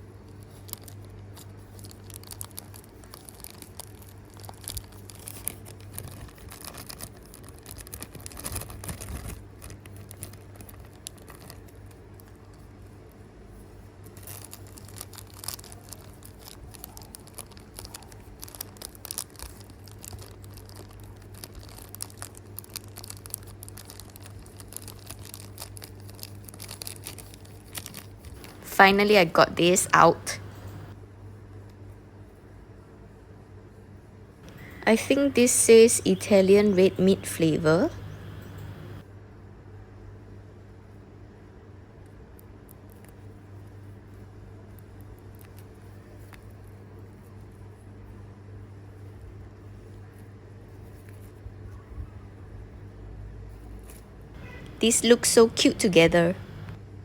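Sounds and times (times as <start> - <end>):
crackles and clicks: 0.3 - 12.6, 14.0 - 31.0, 34.4 - 39.0, 54.4 - 56.8
plastic packaging crinkling and tearing: 0.4 - 12.0, 14.0 - 28.7
steady low hum: 28.4 - 31.0, 34.5 - 39.0, 54.4 - 56.8.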